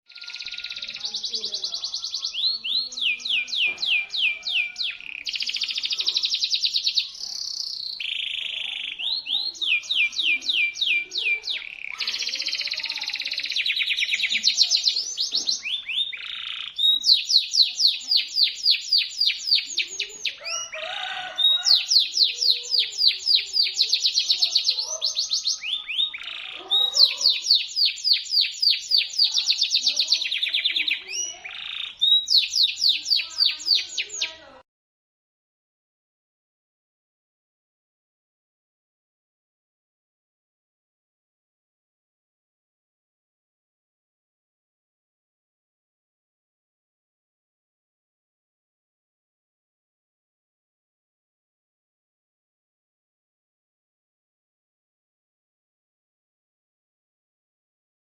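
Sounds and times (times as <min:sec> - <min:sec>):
canary singing: 0:00.1 - 0:34.6.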